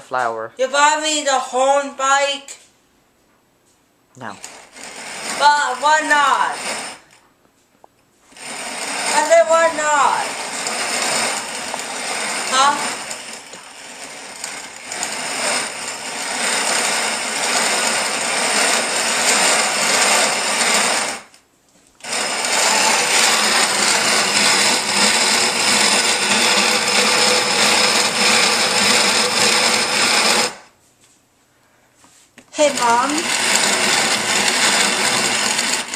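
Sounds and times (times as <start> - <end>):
grain mill grinding: 4.4 - 7.2, 8.3 - 21.4, 22.0 - 30.7, 32.6 - 35.9.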